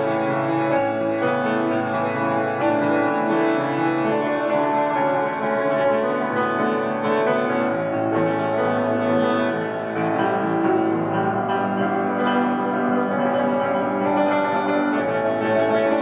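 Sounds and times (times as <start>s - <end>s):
solo piano chords: 0.0s - 16.0s.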